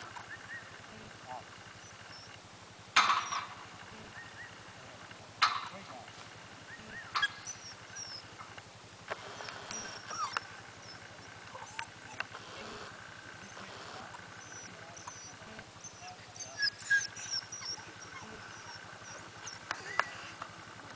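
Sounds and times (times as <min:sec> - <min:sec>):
puppy yipping and whining: 0:01.8 - 0:02.3, 0:06.7 - 0:08.5, 0:09.3 - 0:12.9, 0:13.5 - 0:20.4.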